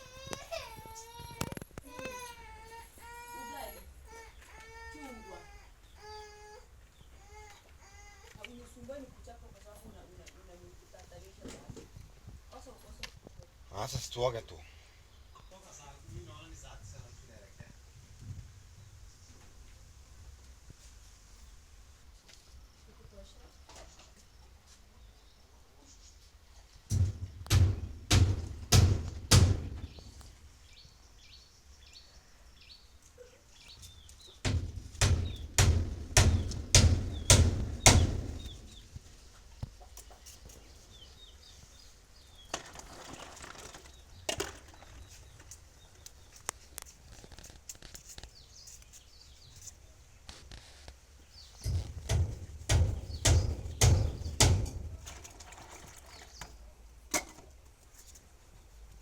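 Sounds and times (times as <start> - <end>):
heavy hand tool striking: 26.9 - 30.0, 34.4 - 38.6, 51.6 - 55.0.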